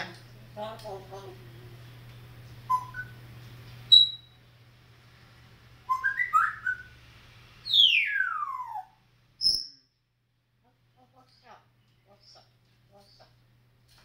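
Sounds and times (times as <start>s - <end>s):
pet bird whistling and chirping: 2.7s - 3.2s, 3.9s - 4.4s, 5.9s - 6.9s, 7.6s - 9.8s.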